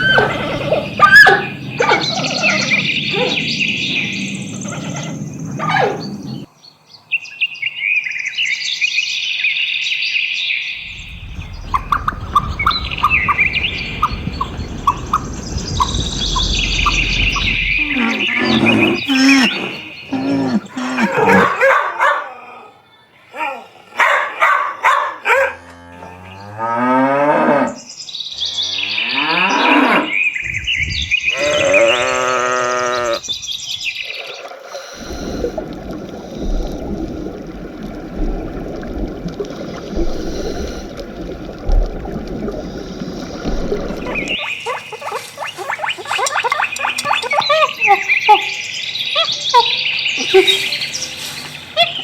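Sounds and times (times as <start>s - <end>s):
birds chirping: 0.0s - 21.8s, 27.6s - 37.3s, 42.4s - 52.0s
steady rushing noise: 10.8s - 17.9s
cows mooing: 16.0s - 21.6s, 31.3s - 33.2s.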